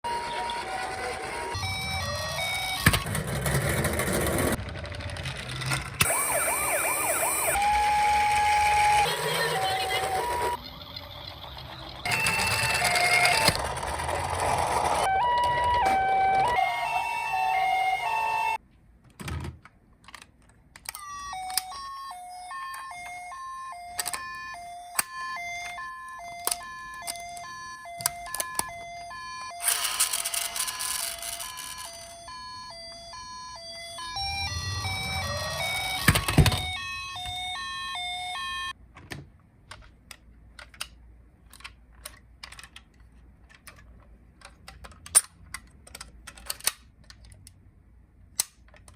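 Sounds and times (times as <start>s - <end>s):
toy electronic siren wailing: 0.0s - 3.0s, 6.0s - 13.7s, 14.8s - 18.6s, 20.9s - 38.8s
rattling engine-like noise: 3.1s - 6.0s, 9.2s - 15.1s
plastic clicks from toy: 39.7s - 47.6s.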